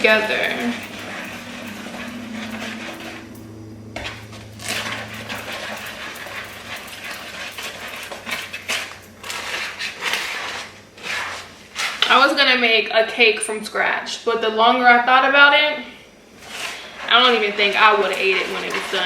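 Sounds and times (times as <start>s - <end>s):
spoon stirring batter in bowl: 0.0s - 12.3s, 16.4s - 19.0s.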